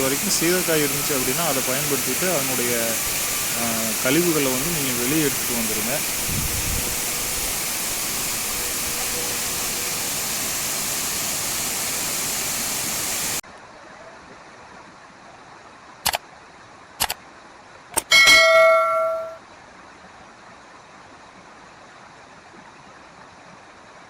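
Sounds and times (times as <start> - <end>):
waterfall rushing: 0.0 - 13.4
sharp metallic strikes: 18.0 - 19.4
bell ringing: 18.1 - 19.4.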